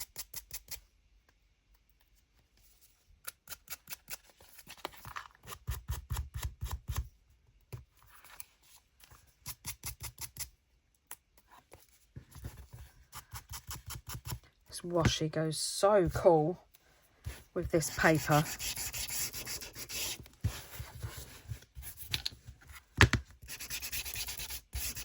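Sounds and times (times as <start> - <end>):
sanding tool scratching paper edges: 17.6 - 20.2, 23.5 - 25.0.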